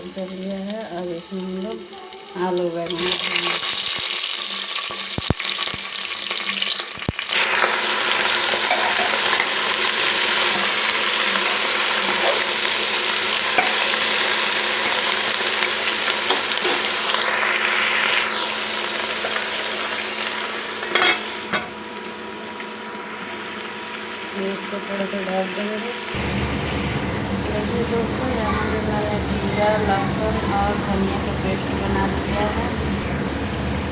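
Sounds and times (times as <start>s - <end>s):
vegetables sizzling in hot oil: 0.0s - 26.4s.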